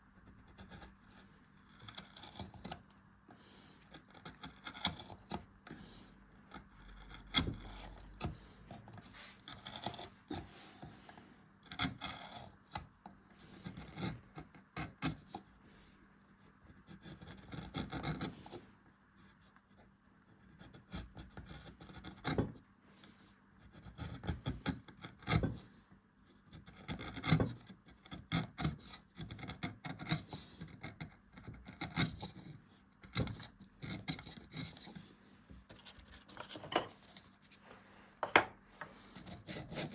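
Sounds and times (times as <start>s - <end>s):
hand tools rasping wood: 38.8s - 39.9s.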